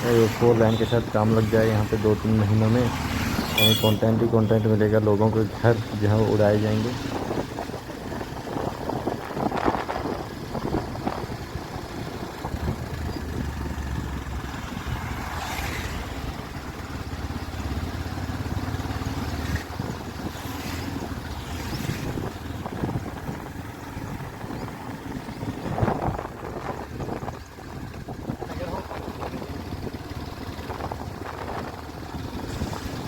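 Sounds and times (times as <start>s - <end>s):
motorcycle engine running: 5.7s - 33.0s
wind noise on microphone: 6.9s - 16.2s, 19.3s - 33.0s.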